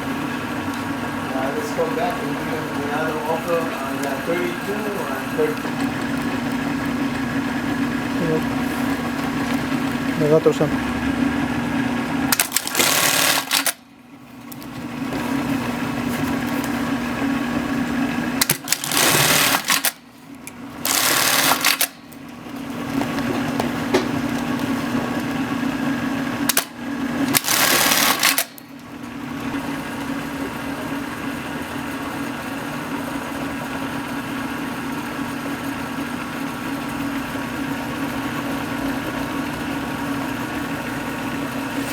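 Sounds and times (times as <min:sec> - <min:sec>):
sewing machine motor hum: 0:00.0 - 0:41.9
bursts of machine stitching: 0:12.3 - 0:13.8, 0:18.4 - 0:20.0, 0:20.8 - 0:22.1, 0:26.4 - 0:28.7.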